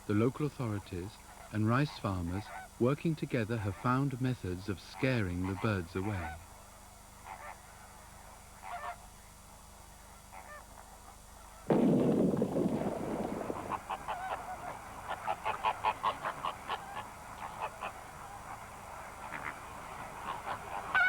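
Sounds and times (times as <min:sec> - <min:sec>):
flamingos honking: 0:11.6 - 0:21.0.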